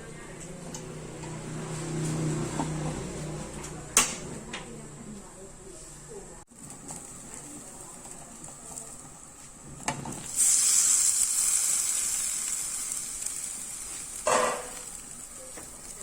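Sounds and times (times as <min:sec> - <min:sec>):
food sizzling in hot pan: 0:06.6 - 0:16.0.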